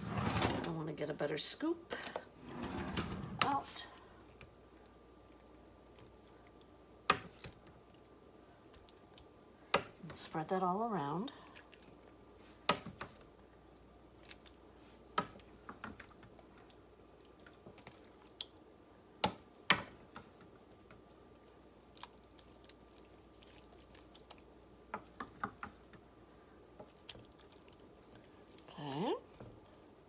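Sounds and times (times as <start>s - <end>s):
wet food squishing: 11.5s - 20.2s, 20.8s - 30.0s.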